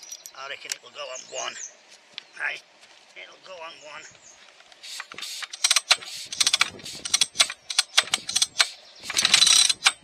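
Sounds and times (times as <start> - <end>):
rapid metallic clicks and ratcheting: 4.9 - 10.0.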